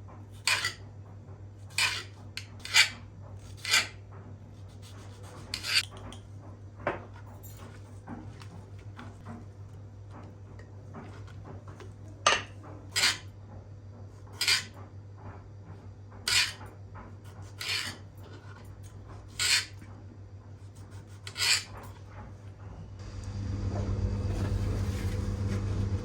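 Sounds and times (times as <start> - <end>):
utensil scraping a dish: 0.4 - 0.8, 1.6 - 5.9, 7.6 - 13.4, 14.2 - 14.8, 16.3 - 19.9, 20.6 - 22.0, 24.2 - 26.0
steady low hum: 4.6 - 26.0.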